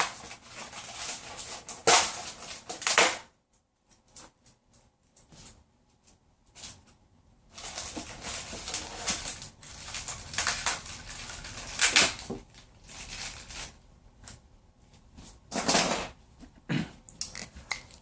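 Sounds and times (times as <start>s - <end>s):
packaging rustling and crackling: 0.0s - 3.2s, 7.5s - 13.8s.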